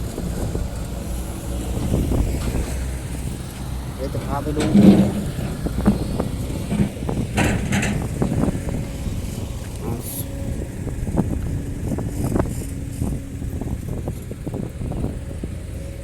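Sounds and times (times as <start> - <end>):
diesel engine of heavy machinery: 0.0 - 16.0
knocks and clatter: 3.6 - 8.8.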